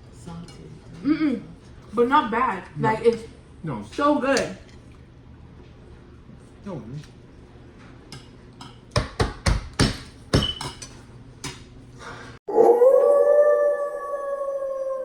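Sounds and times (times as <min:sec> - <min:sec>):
dog howling: 0:12.5 - 0:15.0.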